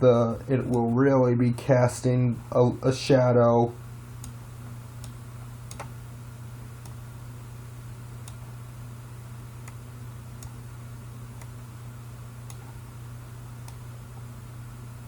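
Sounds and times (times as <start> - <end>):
steady low hum: 0.0 - 15.0
computer mouse clicking: 4.2 - 4.4, 5.0 - 5.9, 8.2 - 8.4, 12.4 - 12.8, 13.6 - 13.8.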